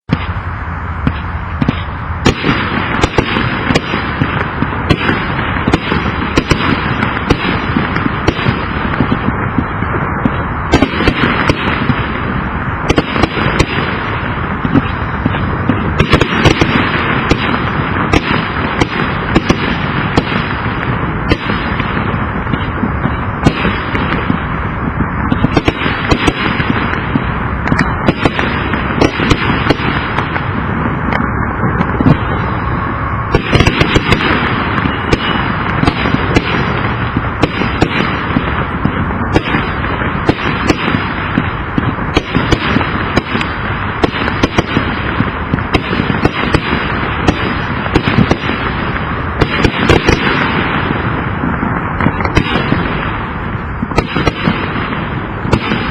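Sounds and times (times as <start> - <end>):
crackling hiss: 0.0 - 55.9
fireworks rapid bangs: 0.0 - 55.9.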